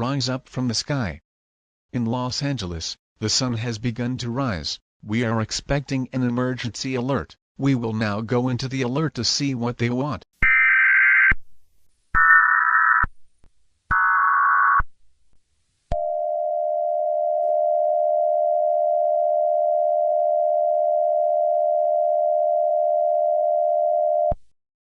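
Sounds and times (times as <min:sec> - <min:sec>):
steady attention tone: 0:15.9 - 0:24.4.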